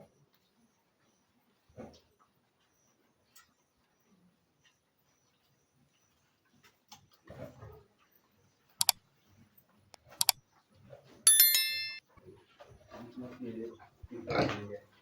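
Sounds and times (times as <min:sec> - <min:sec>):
bright metallic ding: 0:11.3 - 0:12.0.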